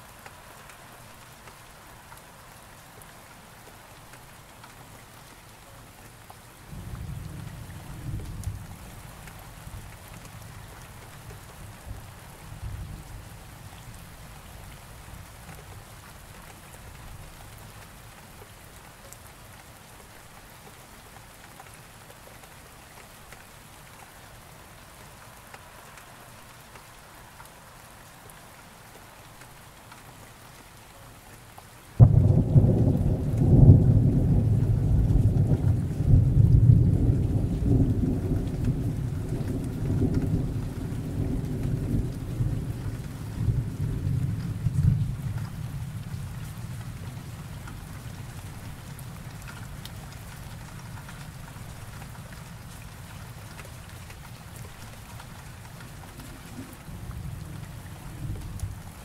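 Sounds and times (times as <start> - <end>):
rain falling: 0.0 - 59.0
thunder rumbling: 32.0 - 47.1.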